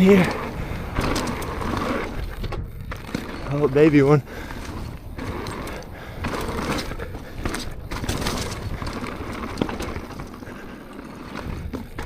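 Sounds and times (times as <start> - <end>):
mountain bike tyres rushing on dirt: 0.0 - 12.0
clicks and knocks from bike: 0.1 - 12.0.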